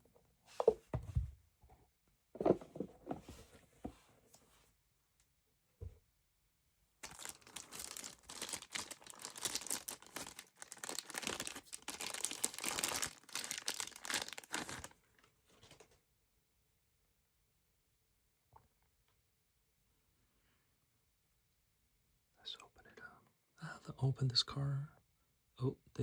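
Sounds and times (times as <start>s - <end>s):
packaging crumpled by hand: 7.0s - 15.8s.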